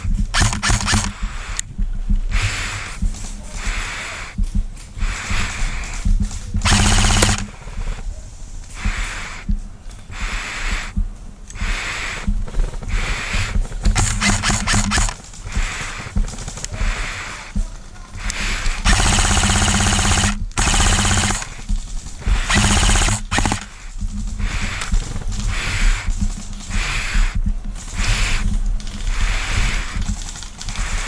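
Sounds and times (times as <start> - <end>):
airsoft rifles firing bursts: 0.0 - 1.6, 6.5 - 8.0, 11.6 - 28.4.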